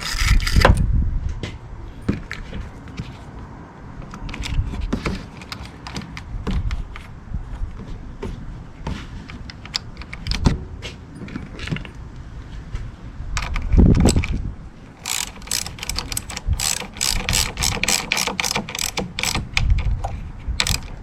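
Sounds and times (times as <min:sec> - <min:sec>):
hand tools clicking and knocking: 0:15.0 - 0:21.0.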